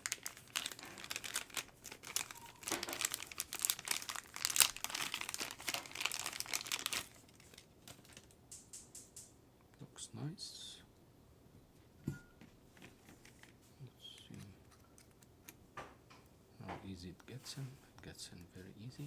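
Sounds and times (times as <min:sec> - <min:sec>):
packaging crinkling: 0:00.0 - 0:08.4.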